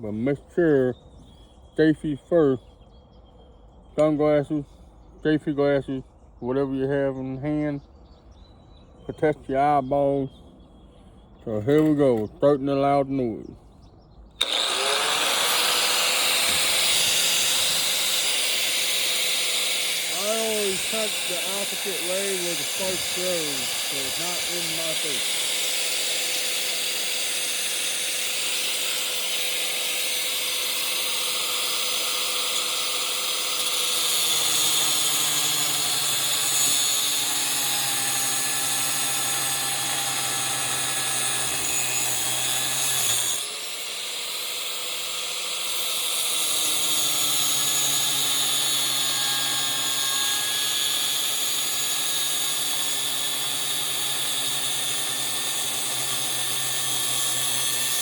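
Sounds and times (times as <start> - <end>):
angle grinder cutting metal: 14.4 - 58.0.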